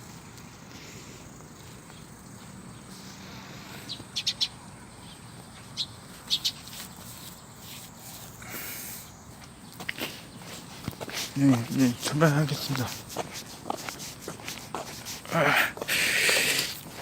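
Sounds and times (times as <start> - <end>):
bird chirping: 3.8 - 7.8.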